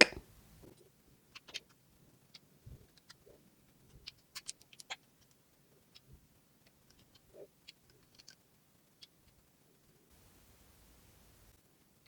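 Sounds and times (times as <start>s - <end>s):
tiny plastic toy pieces clicking: 4.0s - 6.1s, 6.8s - 8.4s.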